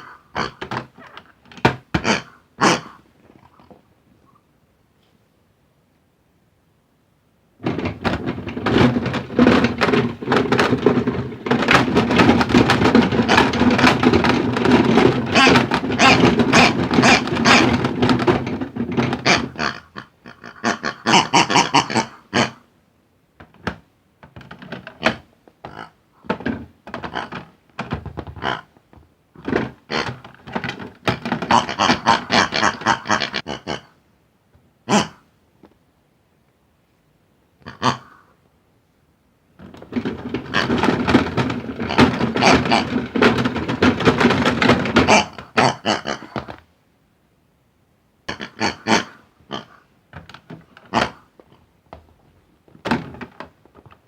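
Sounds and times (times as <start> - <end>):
balls knocking against plastic tub: 0.0 - 2.3, 7.6 - 19.8, 23.4 - 33.4, 39.6 - 46.6, 50.1 - 54.0.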